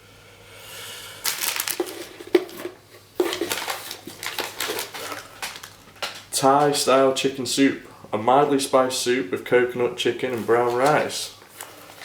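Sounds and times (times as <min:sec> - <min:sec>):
plastic packaging crinkling: 0:01.2 - 0:06.8, 0:10.2 - 0:12.0.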